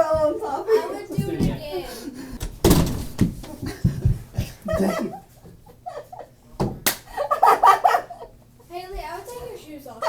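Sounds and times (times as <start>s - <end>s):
people laughing: 3.5s - 6.4s.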